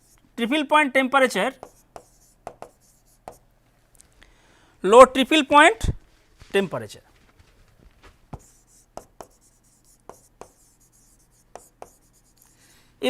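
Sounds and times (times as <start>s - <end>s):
pen scratching on paper: 1.5s - 3.4s, 8.4s - 12.5s
pen tapping: 1.5s - 3.4s, 8.3s - 12.5s.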